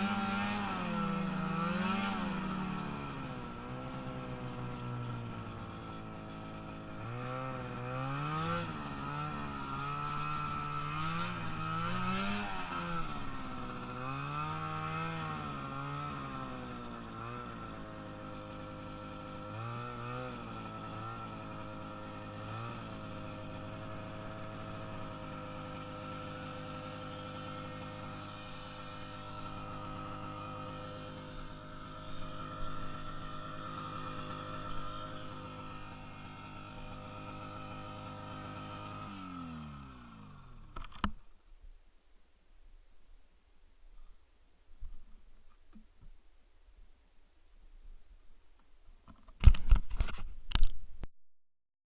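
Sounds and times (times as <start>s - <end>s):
engine revving: 0.0s - 41.1s.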